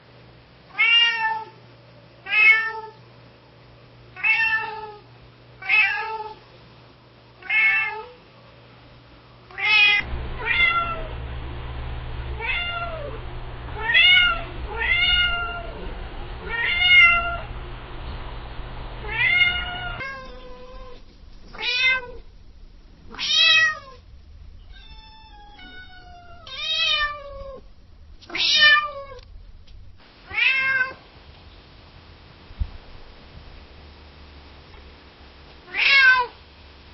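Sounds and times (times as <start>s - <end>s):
steady background hum: 0.0s - 36.9s
cat meowing: 13.8s - 15.8s, 16.4s - 17.5s, 19.0s - 22.2s, 24.6s - 27.7s, 30.3s - 31.0s, 35.7s - 36.3s.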